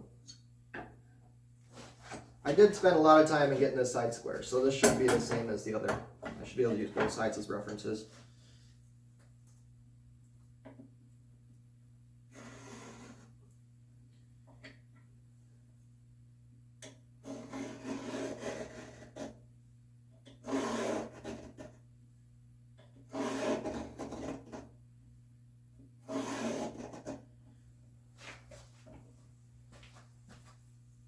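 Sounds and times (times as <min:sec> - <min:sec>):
rasping strokes on wooden boards: 0:17.2 - 0:19.4, 0:23.1 - 0:24.6, 0:26.0 - 0:27.2.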